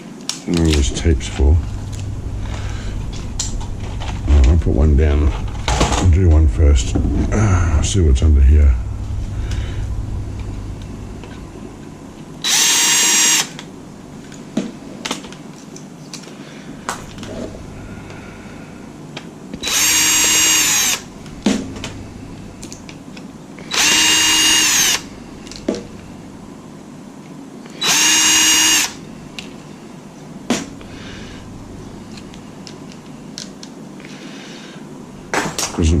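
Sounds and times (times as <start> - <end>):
power screwdriver whining: 12.4 - 13.6, 19.6 - 21.1, 23.7 - 25.1, 27.8 - 29.0.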